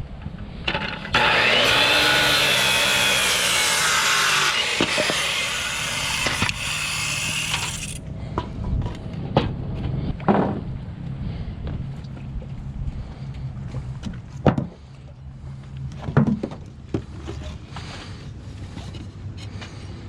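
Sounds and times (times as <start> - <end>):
power saw cutting wood: 0.7 - 8.0.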